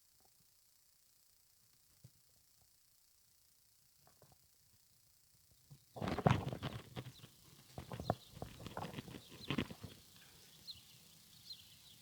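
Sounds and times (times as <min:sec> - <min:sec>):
horse hooves stepping on ground: 0:06.0 - 0:10.2.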